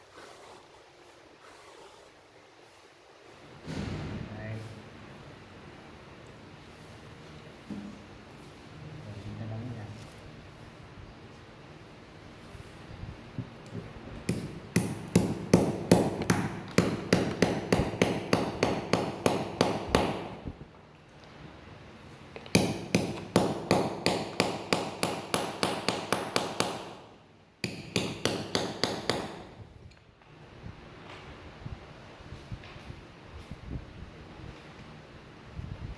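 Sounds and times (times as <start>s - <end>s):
hammer tapping on metal: 14.3s - 20.2s, 22.5s - 27.0s, 27.6s - 29.5s.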